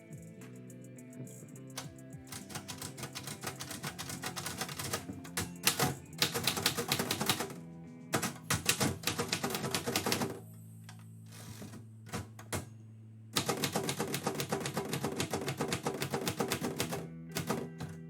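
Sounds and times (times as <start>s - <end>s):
soft background music: 0.0s - 18.0s
typewriter key strikes: 2.3s - 7.6s, 8.2s - 10.4s, 13.4s - 18.0s.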